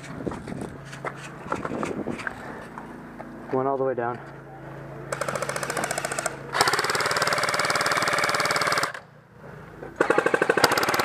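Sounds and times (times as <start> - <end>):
airsoft guns firing bursts: 5.1 - 9.0, 10.0 - 11.0.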